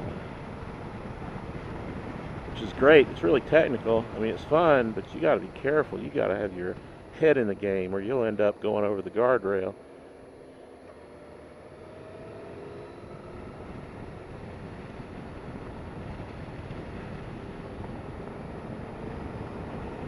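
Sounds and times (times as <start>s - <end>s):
wind rushing over microphone: 0.0s - 9.4s, 11.7s - 20.0s
motorcycle engine running: 9.8s - 20.0s.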